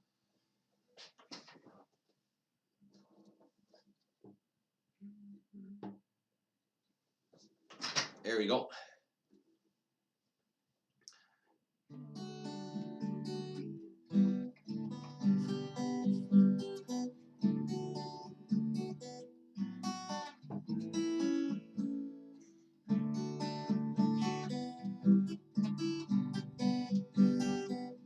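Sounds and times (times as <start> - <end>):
acoustic guitar strumming chords: 11.9 - 28.0.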